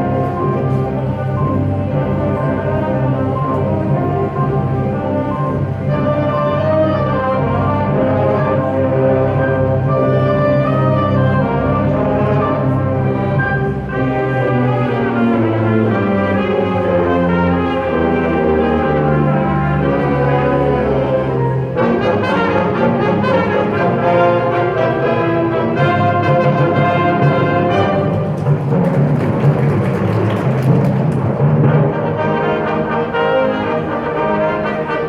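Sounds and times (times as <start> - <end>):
wind ensemble playing: 0.0 - 35.0
drum strokes: 25.8 - 32.2.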